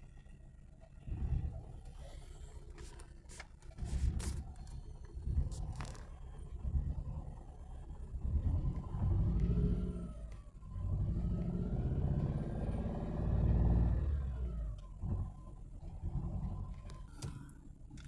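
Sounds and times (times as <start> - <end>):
car engine revving: 5.3 - 15.3.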